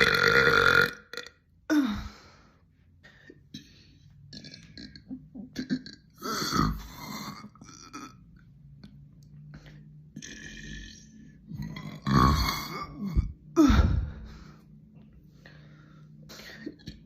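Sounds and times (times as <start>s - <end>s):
woman burping: 0.0s - 2.0s, 4.3s - 8.2s, 10.2s - 13.9s.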